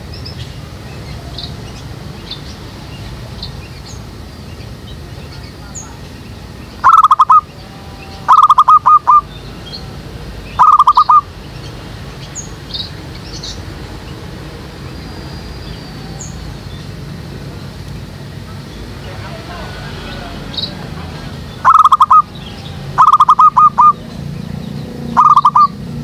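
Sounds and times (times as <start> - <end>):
small birds chirping: 0.0 - 26.0
dove cooing: 6.8 - 9.3, 10.6 - 11.3, 21.6 - 24.0, 25.1 - 25.8.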